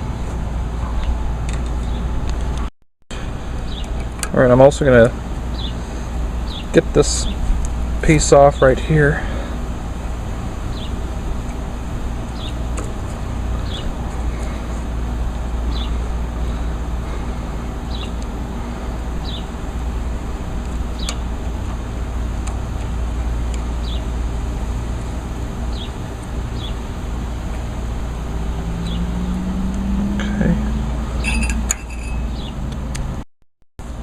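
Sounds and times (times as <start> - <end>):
low outdoor rumble: 0.0 - 33.2
bird chirping: 5.5 - 5.8, 6.4 - 6.8, 12.3 - 12.6, 13.6 - 13.9, 15.7 - 16.0, 23.8 - 24.1, 28.8 - 29.3, 31.2 - 32.6.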